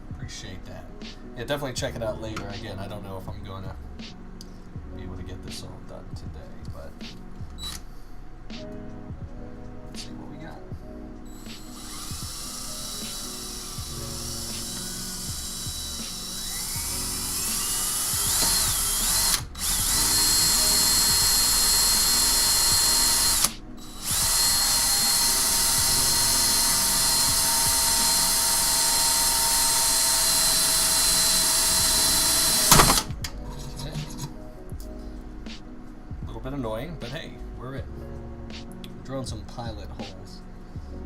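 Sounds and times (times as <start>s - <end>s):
electric drill whining: 11.3s - 33.1s.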